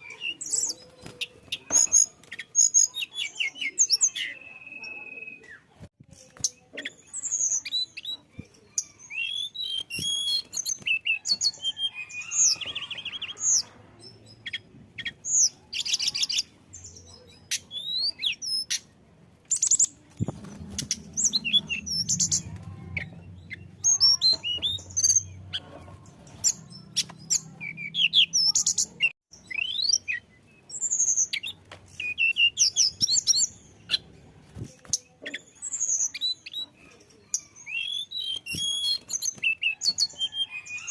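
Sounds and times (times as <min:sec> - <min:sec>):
bird singing chirps and trills: 0:00.0 - 0:18.9, 0:19.5 - 0:40.9
faint low hum: 0:20.0 - 0:27.8.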